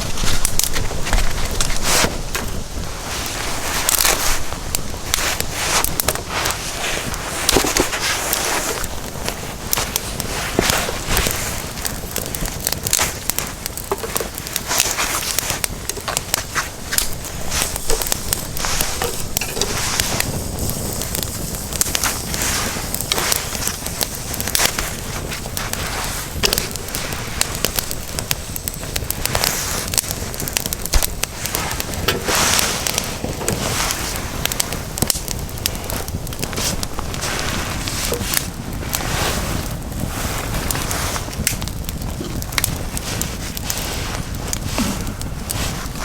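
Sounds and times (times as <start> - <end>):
fire pops and snaps: 0.0 - 46.0
wood fire crackling: 0.0 - 46.0.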